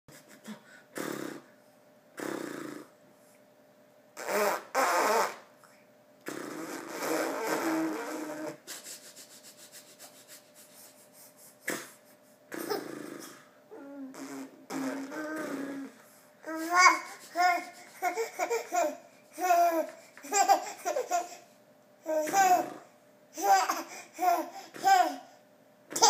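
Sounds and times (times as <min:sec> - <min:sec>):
baby blowing raspberries: 0:04.2 - 0:05.5, 0:06.2 - 0:08.7, 0:11.6 - 0:16.0
baby's voice: 0:13.7 - 0:18.2.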